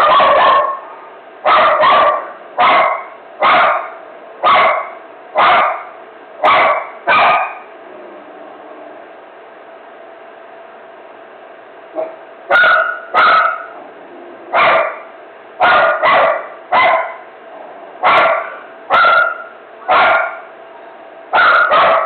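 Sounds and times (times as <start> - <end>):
dog barking: 0.0 - 7.7, 12.0 - 13.8, 14.5 - 17.3, 18.0 - 20.5, 21.3 - 22.0.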